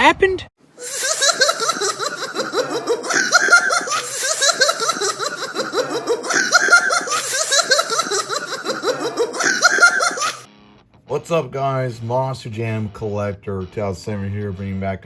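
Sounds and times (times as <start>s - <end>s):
comic laughing sound effect: 0.8s - 10.5s.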